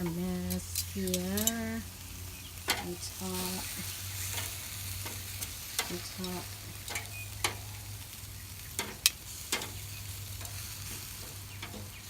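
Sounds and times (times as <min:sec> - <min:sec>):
chicken sizzling on a grill: 0:00.0 - 0:12.0
sharp pops and clicks: 0:06.9 - 0:07.7, 0:08.7 - 0:09.8.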